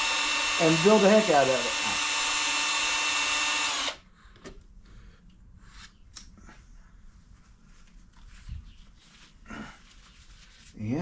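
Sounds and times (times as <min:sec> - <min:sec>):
electric drill spinning: 0:00.0 - 0:04.0.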